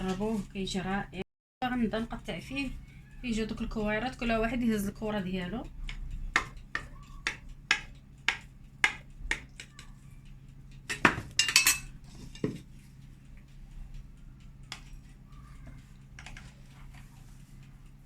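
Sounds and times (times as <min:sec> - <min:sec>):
utensils clinking on baking dish: 0:10.9 - 0:12.7, 0:14.7 - 0:17.1.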